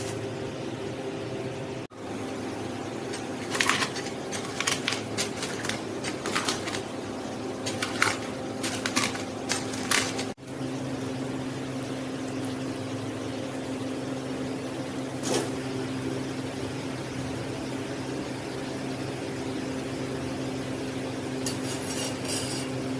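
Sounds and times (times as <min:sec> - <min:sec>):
appliance hum: 0:00.0 - 0:22.9
utensil scraping a pan: 0:21.5 - 0:22.8.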